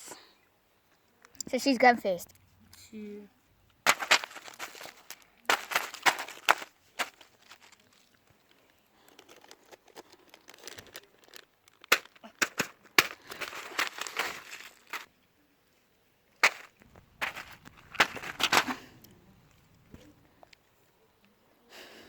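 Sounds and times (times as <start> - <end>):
rustling of plastic toys: 3.6 - 15.1, 16.4 - 20.6
plastic toys clicking: 3.8 - 15.1.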